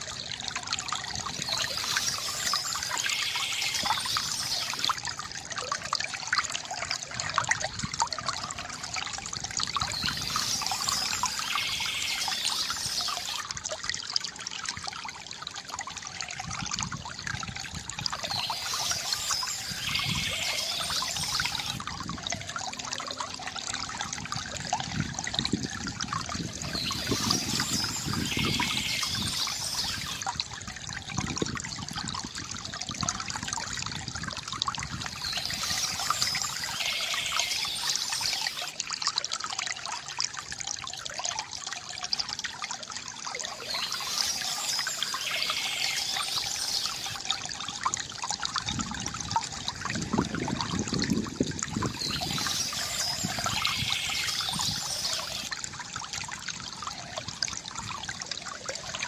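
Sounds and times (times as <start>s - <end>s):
water trickling from fountain: 0.0s - 59.0s
bird calling: 1.4s - 5.0s, 9.9s - 13.4s, 18.2s - 21.8s, 26.6s - 30.2s, 35.1s - 38.7s, 43.5s - 47.2s, 51.9s - 55.5s.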